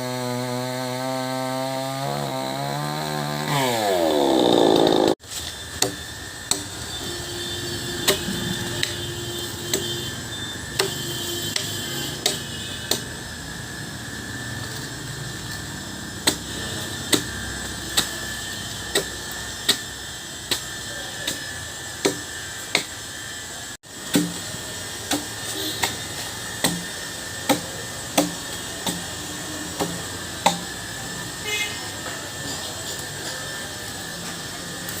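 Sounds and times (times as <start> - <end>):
axe chopping wood: 10.8 - 13.1, 16.2 - 16.4, 17.1 - 17.3, 22.0 - 22.9, 24.0 - 24.4, 25.1 - 26.0, 26.6 - 26.8, 27.4 - 29.1, 29.8 - 30.7.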